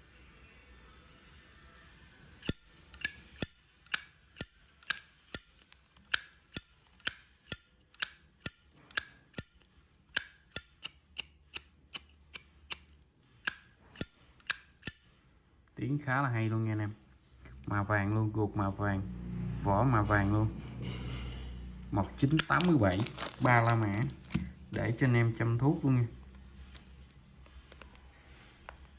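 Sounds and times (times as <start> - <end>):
lighter lid clicking open and shut: 2.4 - 9.6, 10.2 - 12.9, 13.5 - 15.0, 22.3 - 22.7.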